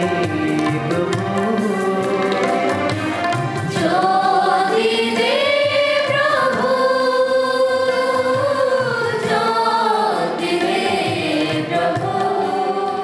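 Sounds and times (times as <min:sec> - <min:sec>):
voices singing a hymn: 0:03.6 - 0:13.0
drum beat: 0:08.2 - 0:13.0.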